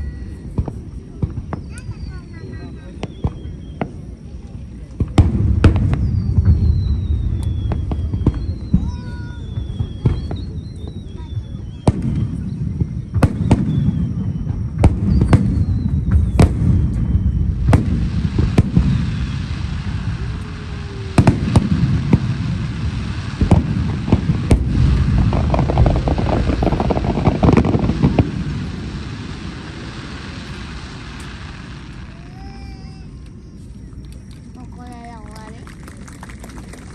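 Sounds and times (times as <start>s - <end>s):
fireworks bangs: 0.0s - 36.9s
fireworks crackling: 0.0s - 36.9s
low rumble: 15.7s - 32.2s.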